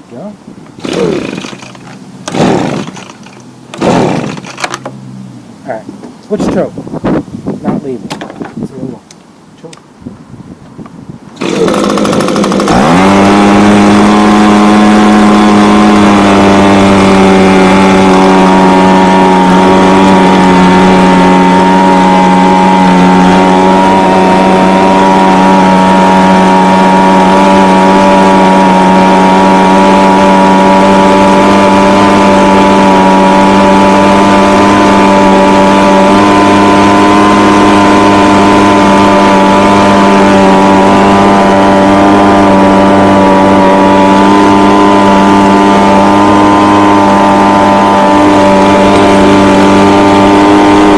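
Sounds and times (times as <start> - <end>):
small two-stroke engine running: 0.8 - 5.2, 11.4 - 50.9.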